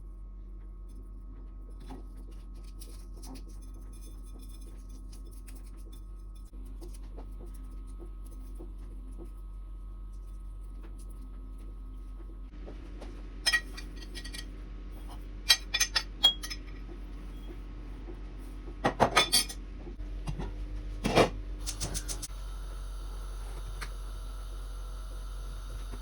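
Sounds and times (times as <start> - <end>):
utensils clinking against cookware: 13.4 - 14.5, 15.5 - 16.8, 18.9 - 19.6.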